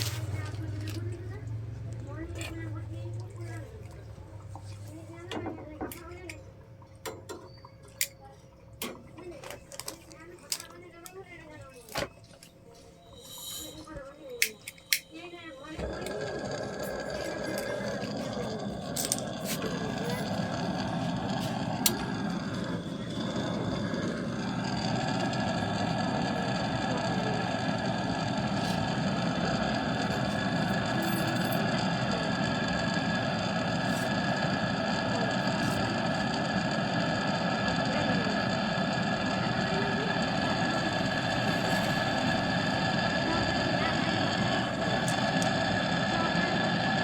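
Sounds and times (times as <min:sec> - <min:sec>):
machine humming with steady tones: 0:12.0 - 0:47.0.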